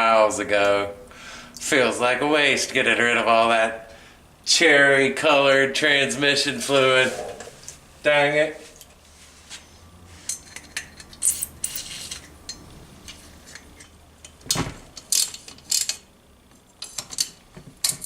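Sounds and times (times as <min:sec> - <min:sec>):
ratchet clicks: 0:15.0 - 0:16.1.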